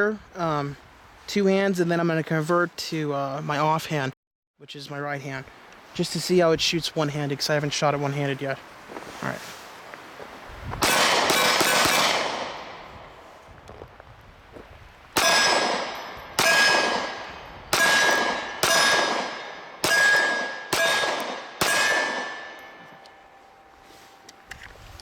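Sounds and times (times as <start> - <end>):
pistol shots: 10.8 - 12.9, 15.2 - 22.8.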